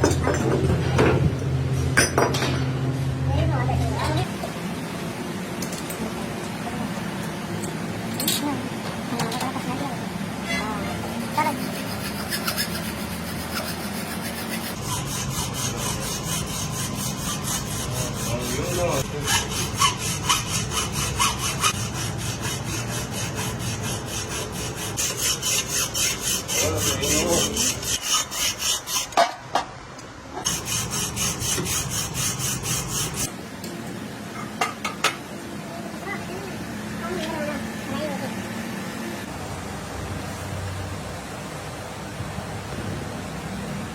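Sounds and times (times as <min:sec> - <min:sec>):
metal rasping scrape at lathe: 0:10.4 - 0:29.3, 0:30.4 - 0:33.3.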